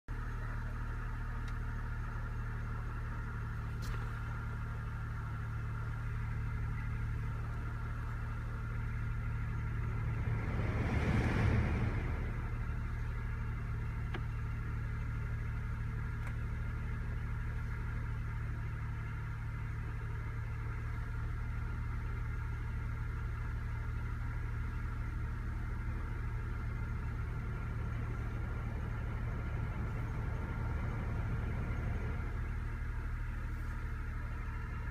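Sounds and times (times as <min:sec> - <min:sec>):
car engine idling hum: 0:00.0 - 0:34.9
rush of air: 0:09.9 - 0:13.0.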